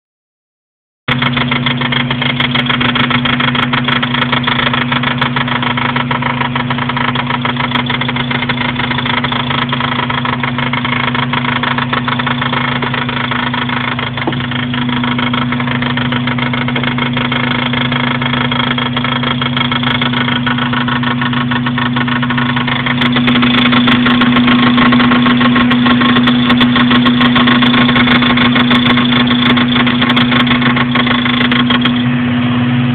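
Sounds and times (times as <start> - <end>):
rapid knocking: 1.1 - 32.0
car engine running: 1.1 - 32.9.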